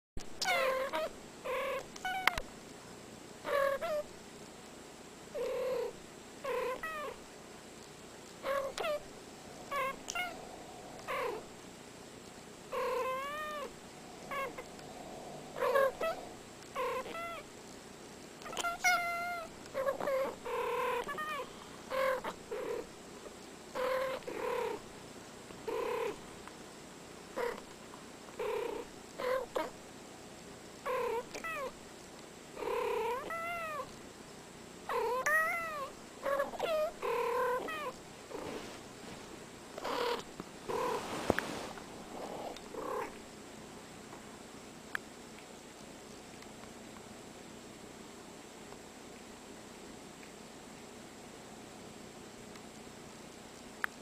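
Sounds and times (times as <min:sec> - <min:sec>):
cats meowing: 0:08.4 - 0:11.5, 0:12.7 - 0:17.4, 0:18.4 - 0:22.7, 0:33.0 - 0:33.9, 0:34.9 - 0:38.0.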